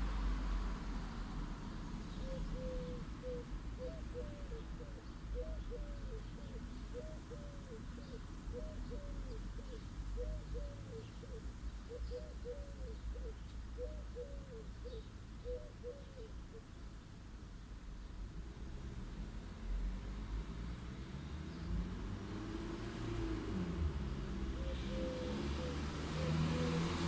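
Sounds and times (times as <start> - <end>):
distant traffic rumble: 0.0 - 27.0
dove cooing: 2.2 - 16.6, 24.2 - 27.0.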